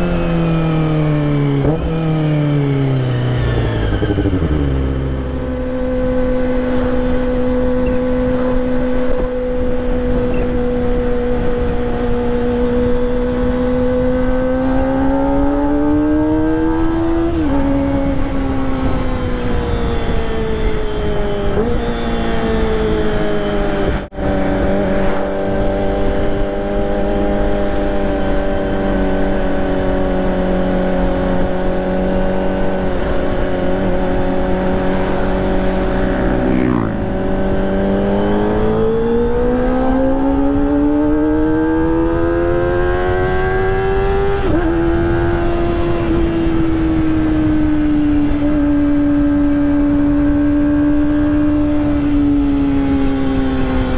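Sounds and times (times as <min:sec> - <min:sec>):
motorcycle engine revving: 0:00.0 - 0:53.9.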